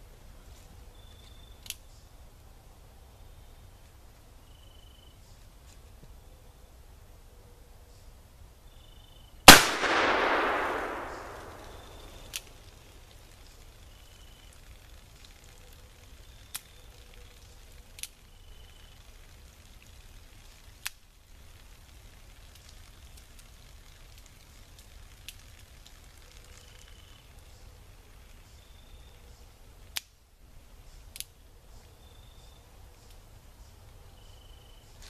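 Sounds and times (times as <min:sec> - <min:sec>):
faint sharp clicks: 0:01.6 - 0:01.9, 0:09.5 - 0:13.7, 0:14.5 - 0:18.3, 0:19.7 - 0:21.0, 0:29.8 - 0:30.2, 0:31.1 - 0:31.4
revolver shot echoing: 0:09.5 - 0:12.4.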